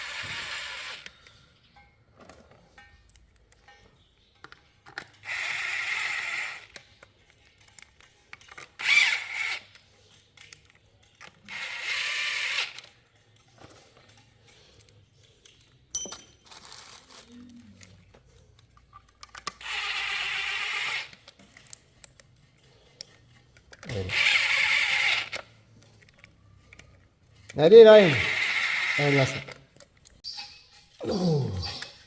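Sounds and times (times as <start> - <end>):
handheld power tool running: 27.9 - 29.6.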